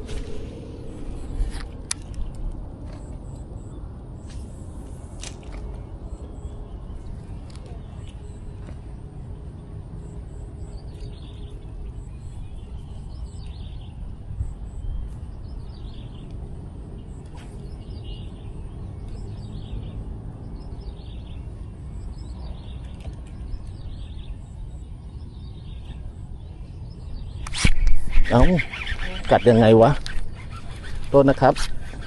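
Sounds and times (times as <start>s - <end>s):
wind rumbling on microphone: 0.0s - 10.0s, 10.7s - 32.0s
bird calling: 27.5s - 32.0s.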